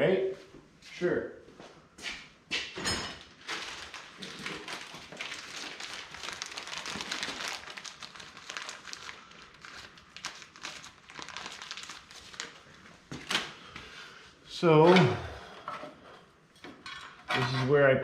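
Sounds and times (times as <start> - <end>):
plastic crinkling and rustling: 3.3 - 13.8.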